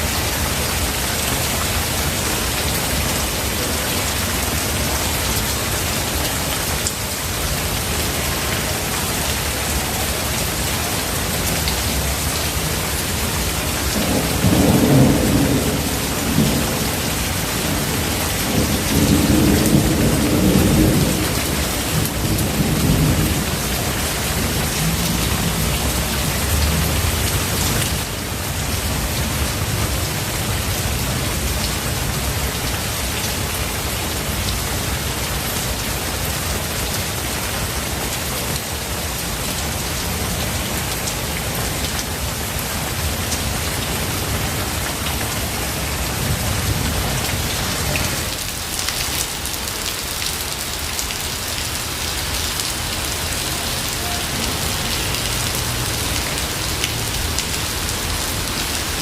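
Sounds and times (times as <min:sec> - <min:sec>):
heavy rain hissing: 0:00.0 - 0:59.0
thunder rumbling: 0:13.9 - 0:27.9.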